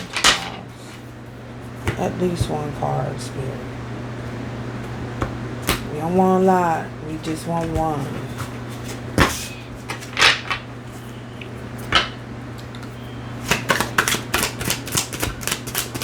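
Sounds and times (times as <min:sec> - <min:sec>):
cards being shuffled by hand: 0:13.5 - 0:16.0.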